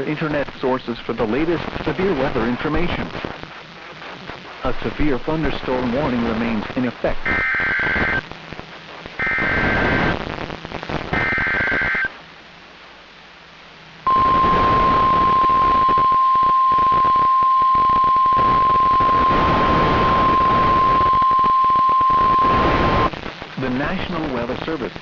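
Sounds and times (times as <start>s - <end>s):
radio static hiss: 0.0s - 25.0s
data burst tones: 7.2s - 8.2s, 9.2s - 10.2s, 11.0s - 12.1s, 14.1s - 23.1s.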